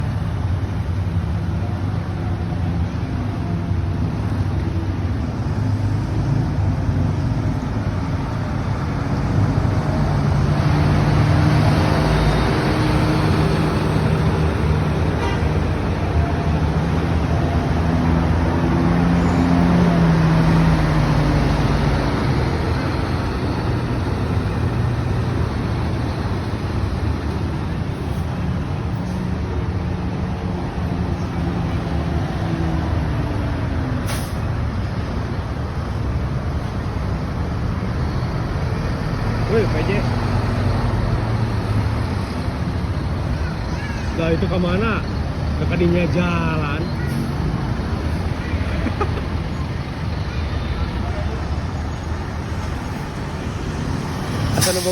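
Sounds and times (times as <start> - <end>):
buses driving past: 0.0 - 54.9
steady traffic noise: 0.0 - 54.9.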